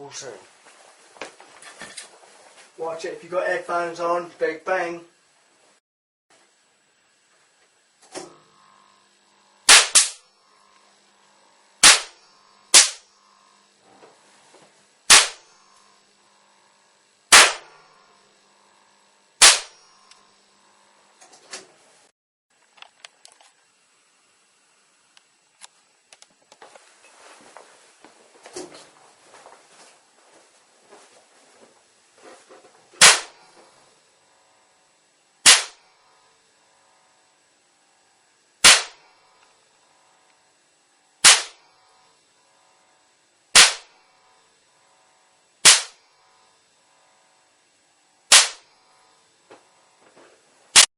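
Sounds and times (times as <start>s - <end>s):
sharp electrical bangs: 9.6s - 10.3s, 11.8s - 13.2s, 15.1s - 15.7s, 17.3s - 18.0s, 19.4s - 20.1s, 33.0s - 33.6s, 35.4s - 35.9s, 38.6s - 39.1s, 41.2s - 41.7s, 43.5s - 44.0s, 45.6s - 46.1s, 48.3s - 48.8s.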